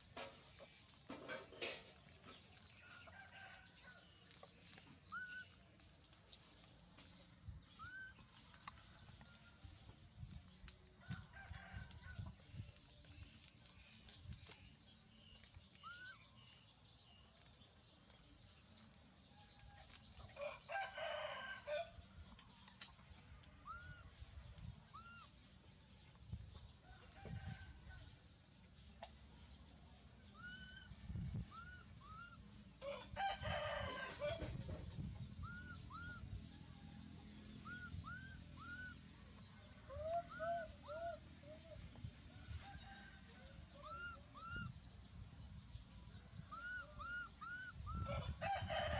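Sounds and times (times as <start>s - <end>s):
rooster crowing: 32.8s - 34.4s, 48.0s - 48.9s.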